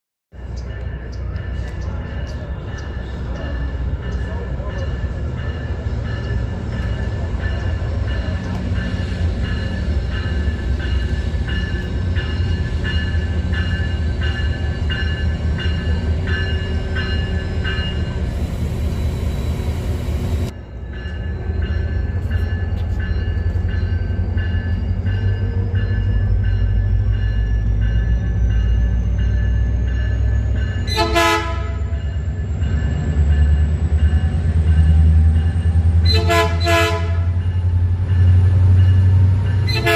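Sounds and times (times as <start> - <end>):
diesel locomotive engine rumbling: 0.3 - 39.9
rhythmic ringing bell: 0.4 - 18.2, 20.7 - 30.9
air horn blast: 30.9 - 31.9, 36.1 - 37.3.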